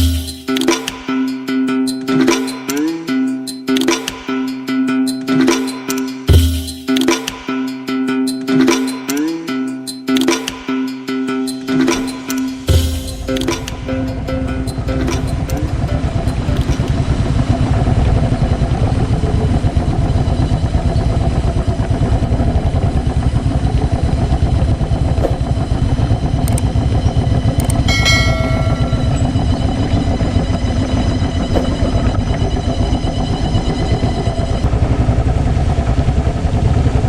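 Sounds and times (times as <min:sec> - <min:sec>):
motorcycle engine running: 0:12.6 - 0:37.0.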